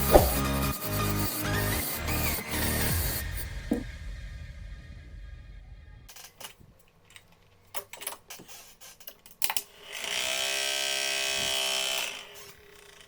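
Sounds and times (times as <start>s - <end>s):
small electric motor buzzing: 0.0s - 3.5s, 9.7s - 13.0s.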